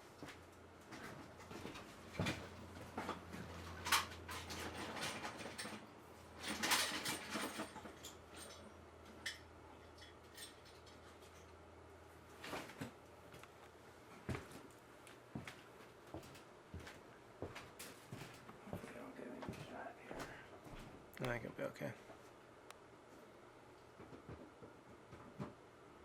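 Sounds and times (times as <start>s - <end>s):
objects clicking and rattling: 3.0s - 11.5s.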